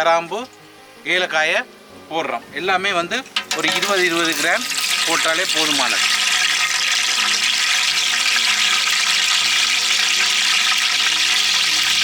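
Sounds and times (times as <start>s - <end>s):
spices sizzling in hot oil: 3.2s - 12.0s.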